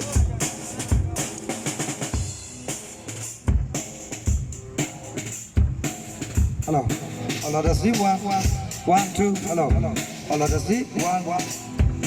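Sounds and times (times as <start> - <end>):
snare and cymbal hits: 0.0 - 12.0
bass drum thumps: 5.6 - 10.7, 11.8 - 12.0.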